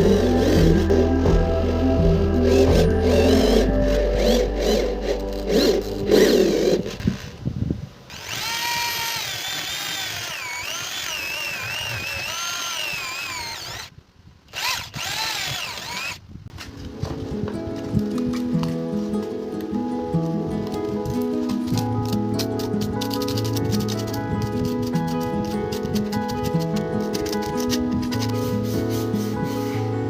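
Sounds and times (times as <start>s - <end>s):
power tool motor whining: 0.0s - 1.0s, 4.2s - 7.3s, 8.1s - 13.9s, 14.5s - 16.2s
background music: 0.0s - 7.2s, 16.9s - 30.0s.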